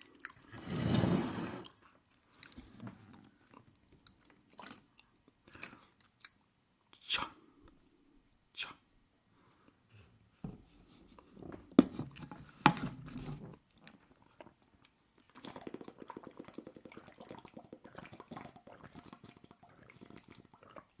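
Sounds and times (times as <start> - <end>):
close-miked chewing: 1.7 - 2.6, 3.2 - 6.5, 13.8 - 21.0.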